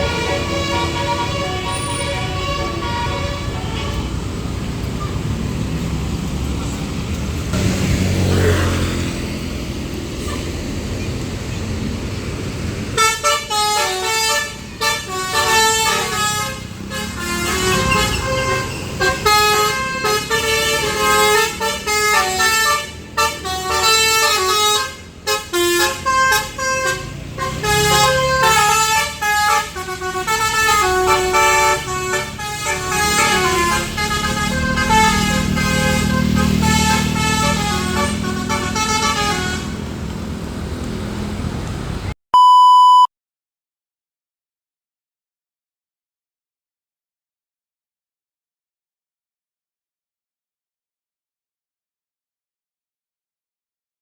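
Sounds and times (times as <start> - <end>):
musical bus horn melody: 0.0 - 4.3, 12.9 - 40.0
vehicle passing: 0.0 - 13.0, 26.5 - 42.1
road traffic: 0.0 - 43.1.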